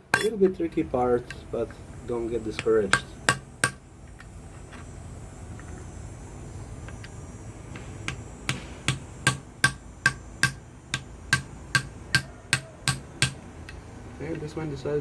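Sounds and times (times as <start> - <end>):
hammer tapping metal rivet: 11.3 - 13.4.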